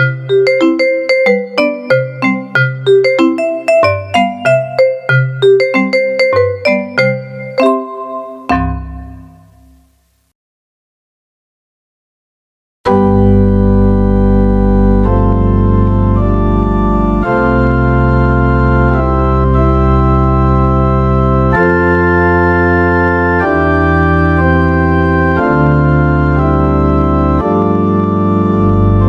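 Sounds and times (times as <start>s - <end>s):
held organ chords: 0.0s - 9.8s, 12.9s - 29.0s.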